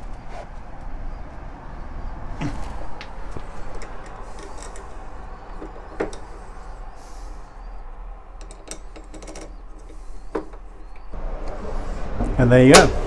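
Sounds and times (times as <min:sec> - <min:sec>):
metal parts clicking: 0:03.3 - 0:07.2, 0:08.3 - 0:11.1.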